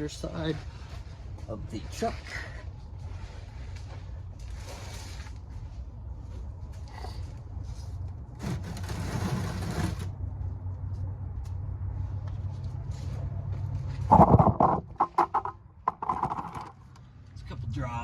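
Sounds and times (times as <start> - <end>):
steady low hum: 0.0 - 8.9, 10.1 - 18.0
scraping rustling: 8.4 - 10.1.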